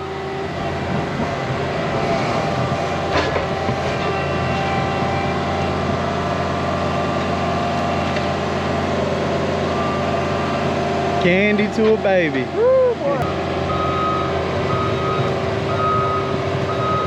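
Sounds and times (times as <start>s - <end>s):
diesel engine running: 0.0s - 17.0s.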